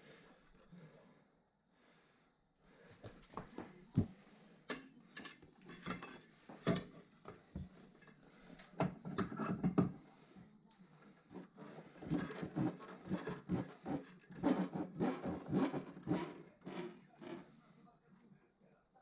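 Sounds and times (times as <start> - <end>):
hard objects knocking and clattering: 8.8 - 10.0.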